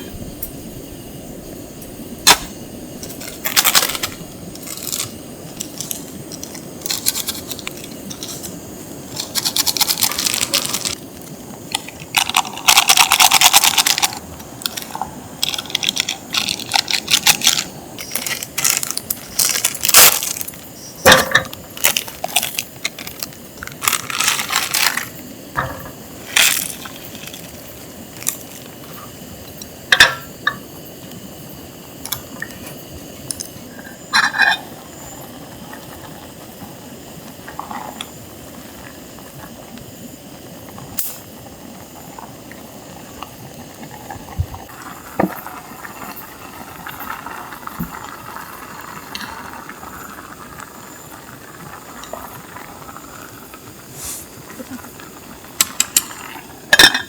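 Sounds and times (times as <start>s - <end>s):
small hard objects clattering: 3.0s - 28.7s.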